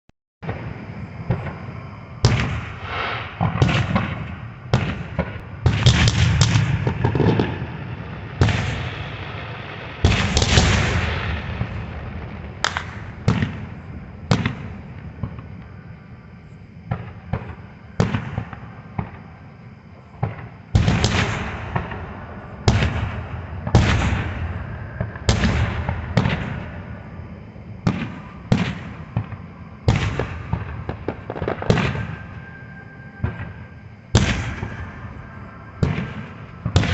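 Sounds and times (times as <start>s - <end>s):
fireworks booming: 0.4s - 36.9s.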